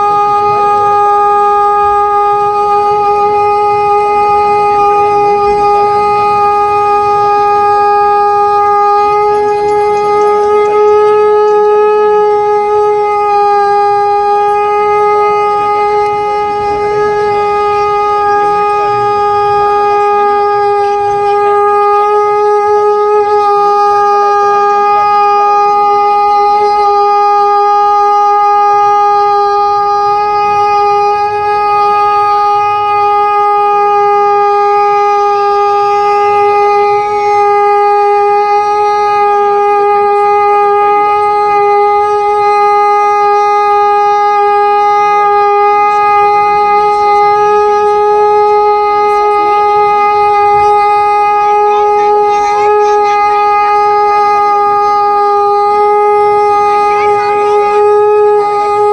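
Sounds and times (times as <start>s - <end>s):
conch shell blown: 0.0s - 58.9s.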